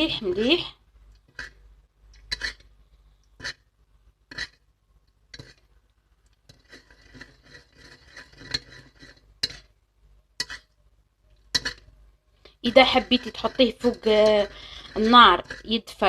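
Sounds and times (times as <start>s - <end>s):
spoon scraping and tapping: 1.2s - 3.7s, 4.3s - 4.6s, 5.3s - 5.7s, 6.4s - 9.8s, 10.4s - 10.8s, 11.4s - 16.0s.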